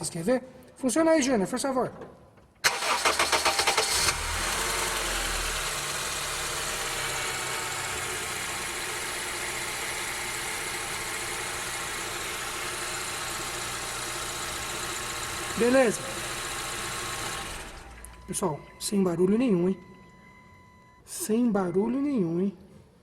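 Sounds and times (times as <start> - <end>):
car engine starter cranking: 2.6 - 5.6, 15.2 - 18.3
car engine idling: 2.7 - 18.8.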